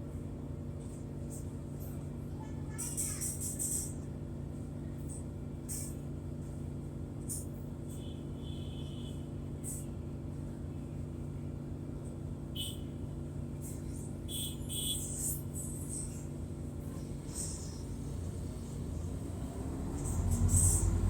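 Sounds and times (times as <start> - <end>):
bus diesel engine running: 9.3 - 21.0.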